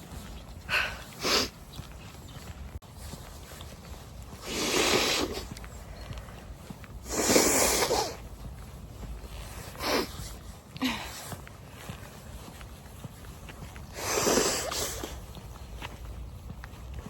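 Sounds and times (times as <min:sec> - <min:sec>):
person blowing nose: 0:04.4 - 0:05.5, 0:07.1 - 0:08.2, 0:14.0 - 0:15.1.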